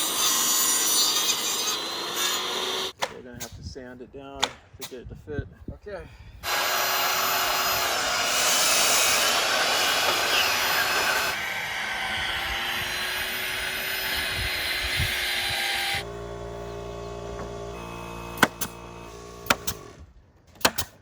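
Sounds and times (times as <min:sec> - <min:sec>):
electric sander on wood: 0:06.4 - 0:19.9.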